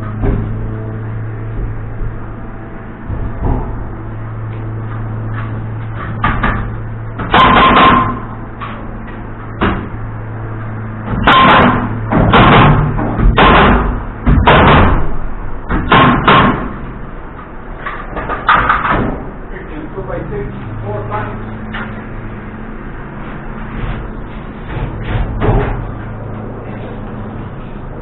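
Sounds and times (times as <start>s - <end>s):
steady low hum: 0.0s - 28.0s
heavy knocks on wood: 0.2s - 0.8s, 3.0s - 4.0s, 11.1s - 15.1s, 15.7s - 16.8s.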